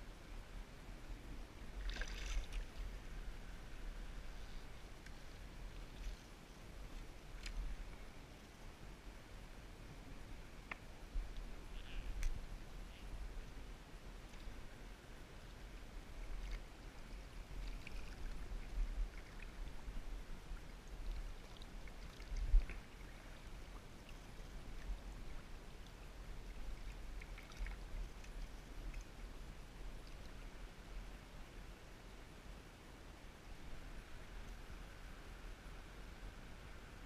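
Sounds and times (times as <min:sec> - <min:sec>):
wind rumbling on microphone: 0:00.0 - 0:31.4
river water splashing: 0:01.5 - 0:08.3, 0:15.8 - 0:30.8.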